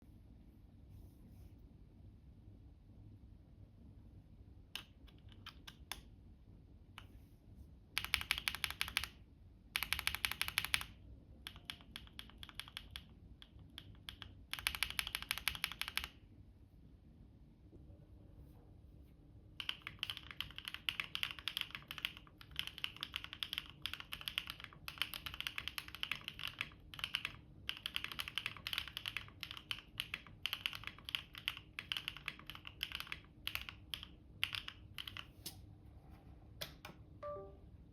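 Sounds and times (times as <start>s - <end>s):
mechanical keyboard typing: 4.8s - 6.1s, 8.0s - 9.2s, 9.8s - 16.2s, 19.6s - 35.3s.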